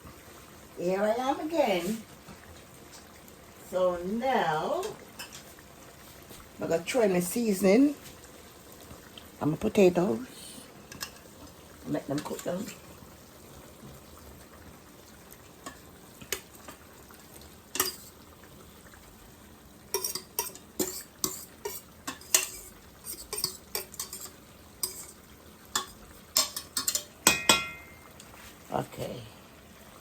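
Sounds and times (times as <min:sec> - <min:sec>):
spoon clinking against pot: 0:17.8 - 0:18.1, 0:20.0 - 0:28.1.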